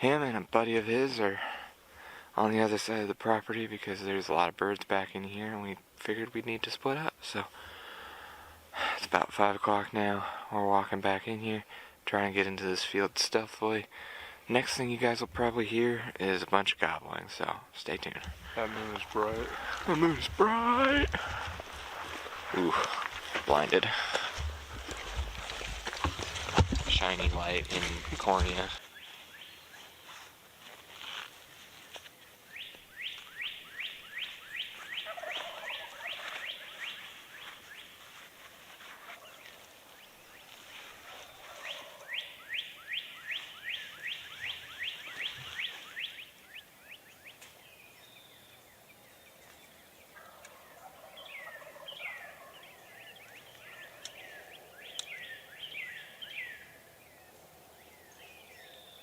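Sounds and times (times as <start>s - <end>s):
turkeys gobbling: 18.1s - 28.8s, 33.0s - 37.9s, 38.9s - 46.3s, 50.1s - 56.9s
bird chirps: 32.2s - 38.0s, 39.1s - 59.0s.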